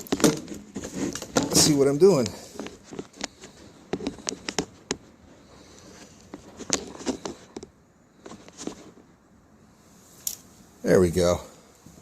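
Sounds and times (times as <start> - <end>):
handling clicks and knocks: 0.0 - 5.0.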